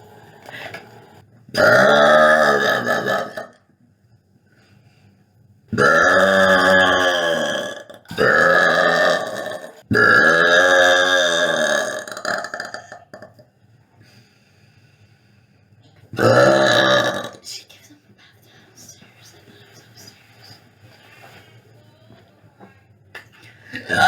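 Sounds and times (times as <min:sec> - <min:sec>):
woman burping: 0:01.6 - 0:03.6, 0:05.8 - 0:13.4, 0:16.2 - 0:17.4, 0:23.7 - 0:24.0.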